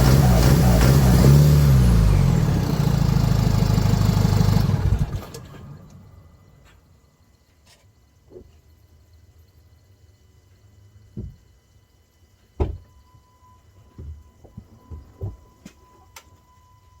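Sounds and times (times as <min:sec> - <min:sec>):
diesel engine running: 0:00.0 - 0:06.3.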